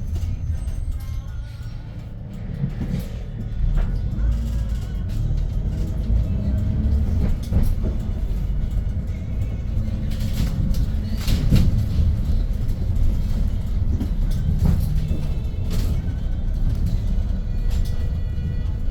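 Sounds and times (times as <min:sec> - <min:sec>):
bus engine and road rumble: 0:00.0 - 0:18.9.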